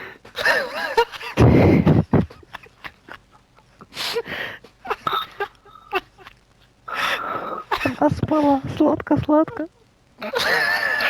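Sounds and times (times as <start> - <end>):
quiet breathy sounds: 0.0 - 2.8, 3.6 - 9.0.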